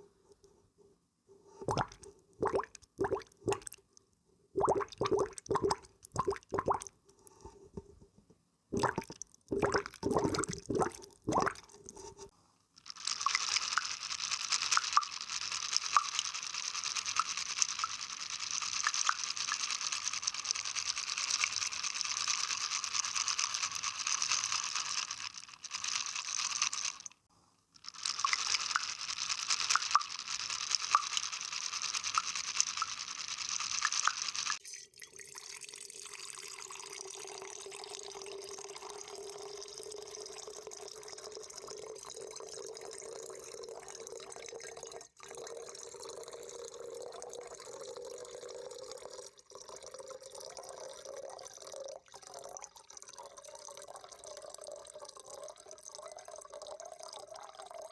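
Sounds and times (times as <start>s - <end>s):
water plops: 1.7s - 3.8s, 4.6s - 6.9s, 8.8s - 11.7s.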